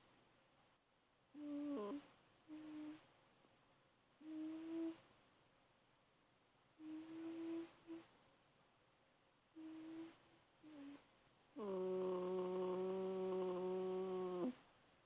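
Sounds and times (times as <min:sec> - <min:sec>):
puppy humming in sleep: 0:01.4 - 0:03.0, 0:04.2 - 0:05.0, 0:06.8 - 0:08.1, 0:09.6 - 0:11.0, 0:11.6 - 0:14.6.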